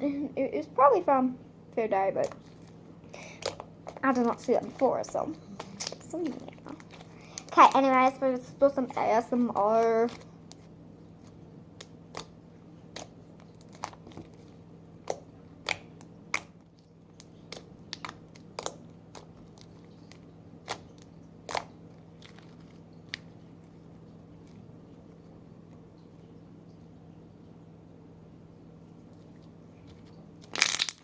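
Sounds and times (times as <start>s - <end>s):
slime popping and clicking: 17.2s - 19.3s, 30.4s - 31.0s.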